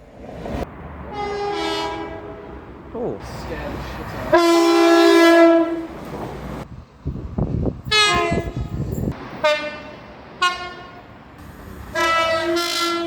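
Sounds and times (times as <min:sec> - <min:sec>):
low train rumble: 0:00.0 - 0:13.0
train horn blasts: 0:01.1 - 0:02.7, 0:04.2 - 0:06.0, 0:07.9 - 0:08.8, 0:09.4 - 0:11.1, 0:11.8 - 0:13.0.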